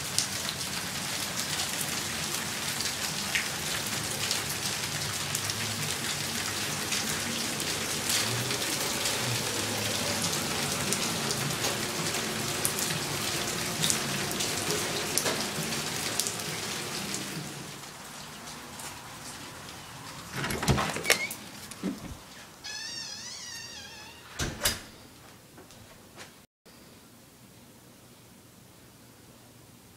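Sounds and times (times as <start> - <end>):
rain with drop ticks: 0.0 - 23.6.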